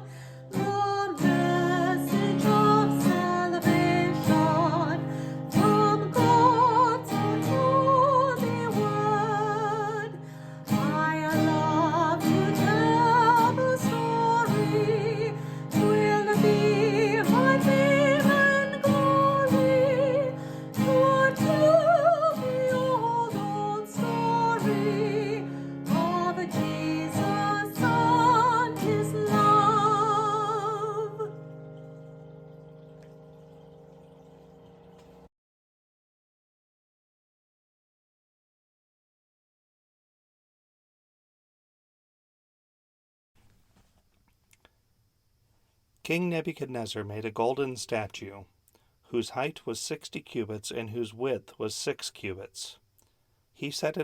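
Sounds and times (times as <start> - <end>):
person singing: 0.0 - 31.5
acoustic guitar strumming: 0.5 - 35.3.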